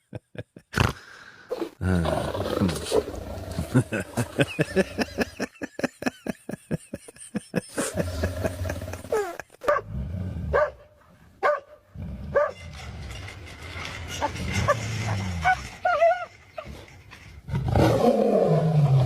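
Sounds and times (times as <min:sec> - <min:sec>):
dog yipping and barking: 0:11.4 - 0:11.6.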